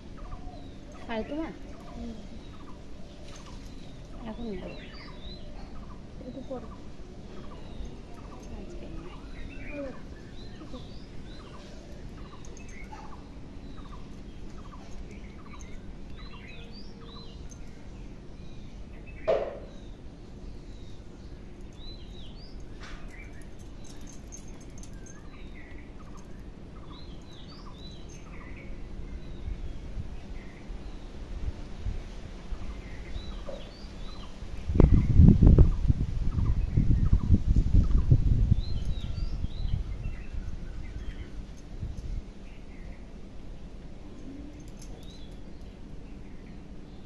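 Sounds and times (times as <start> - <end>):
small birds chirping: 0.0 - 47.0
sharp knock: 19.3 - 19.7.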